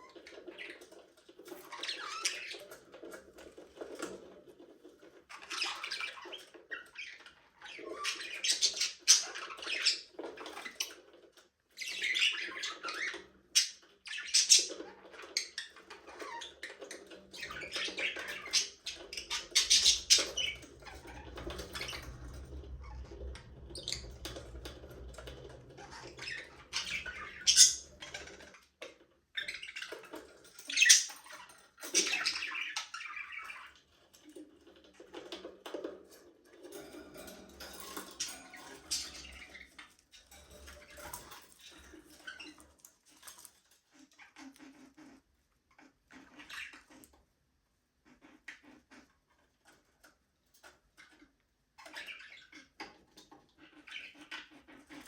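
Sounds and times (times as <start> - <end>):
budgerigars chattering and chirping: 11.8 - 28.6, 29.4 - 33.7, 45.8 - 47.1, 51.0 - 55.0.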